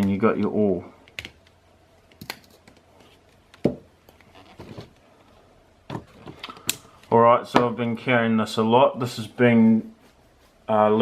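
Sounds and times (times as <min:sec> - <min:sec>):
soft handling noise: 0:09.1 - 0:11.0.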